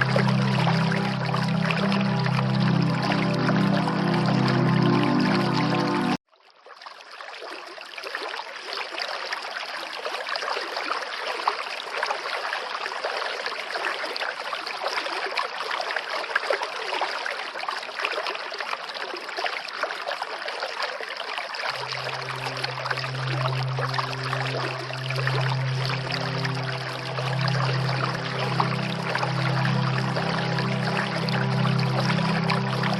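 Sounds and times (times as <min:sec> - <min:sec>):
low sustained musical tone: 0:00.0 - 0:06.2, 0:21.7 - 0:32.9
running water rushing: 0:00.0 - 0:06.2, 0:18.4 - 0:32.9.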